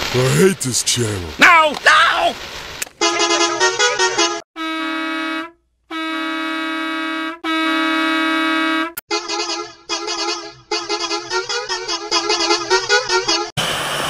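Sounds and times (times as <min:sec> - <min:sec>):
long horn blasts: 0:03.0 - 0:13.5.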